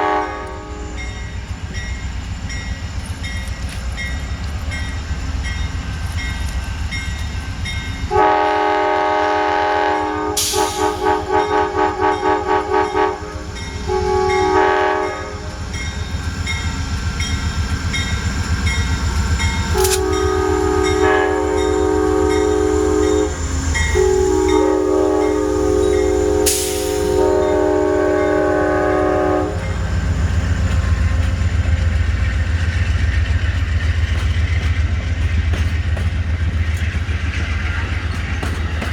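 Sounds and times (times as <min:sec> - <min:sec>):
train horn blasts: 0:00.0 - 0:01.1, 0:08.1 - 0:15.6, 0:19.7 - 0:30.0
train rumble and clickety-clack: 0:00.0 - 0:38.9.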